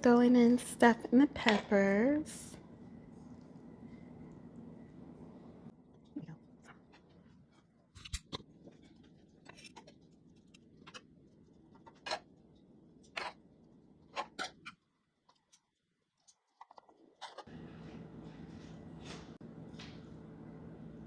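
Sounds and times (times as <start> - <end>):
faint low hum: 0.0 - 11.8.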